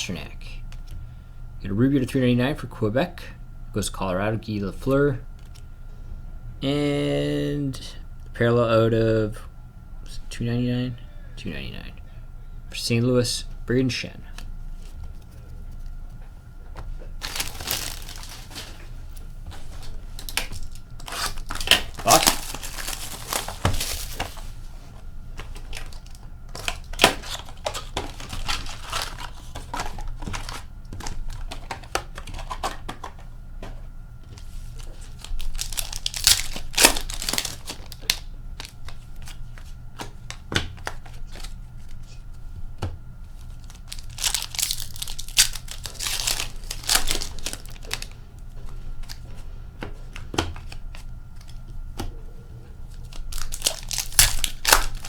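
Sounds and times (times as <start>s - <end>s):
plastic wrapping crinkling: 17.0s - 33.2s, 34.4s - 39.6s, 43.4s - 48.2s, 53.0s - 55.0s.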